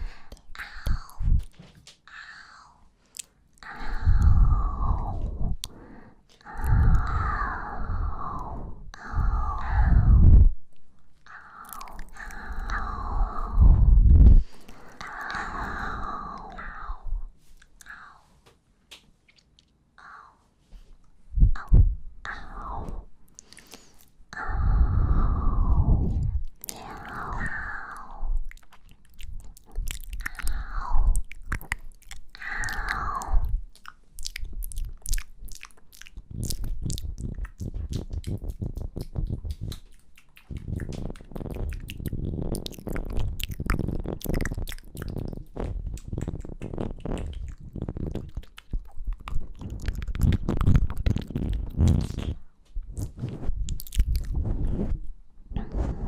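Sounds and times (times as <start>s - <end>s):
breathy sounds: 0.0s - 18.4s, 21.3s - 56.0s
kisses and lip smacks: 33.7s - 52.4s.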